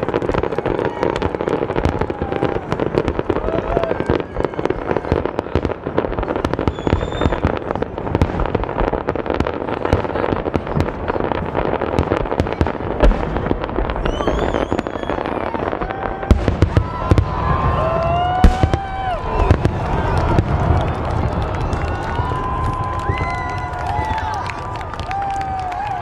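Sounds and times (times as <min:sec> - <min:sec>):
fireworks bangs and crackles: 0:00.0 - 0:26.0
fireworks whistles: 0:06.0 - 0:08.6, 0:12.0 - 0:20.9.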